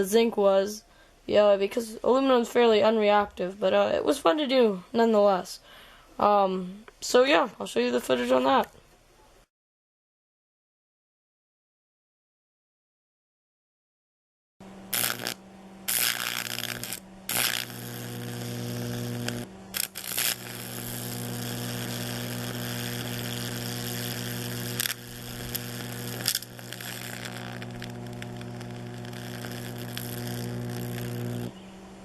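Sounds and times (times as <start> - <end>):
electrical hum and buzz: 14.6 - 32.0
electric arc crackling: 14.9 - 31.6.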